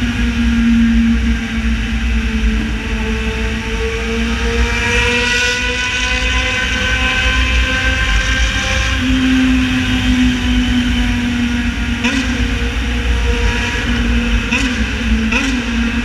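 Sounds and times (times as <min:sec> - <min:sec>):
motorcycle engine running: 0:05.9 - 0:16.0.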